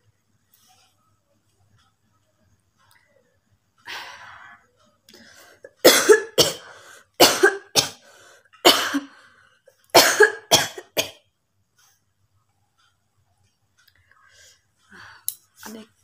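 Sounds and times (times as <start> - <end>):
woman coughing: 5.7 - 8.0, 8.6 - 9.1, 10.0 - 11.2.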